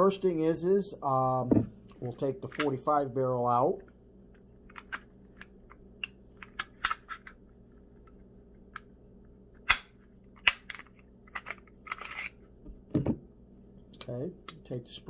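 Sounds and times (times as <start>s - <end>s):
pistol parts clicking and clacking: 4.6s - 7.4s, 9.7s - 12.4s.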